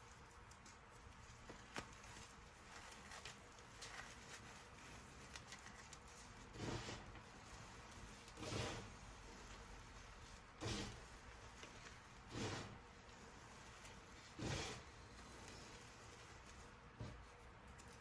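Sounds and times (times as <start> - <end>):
chalk crunching: 0.0 - 18.0.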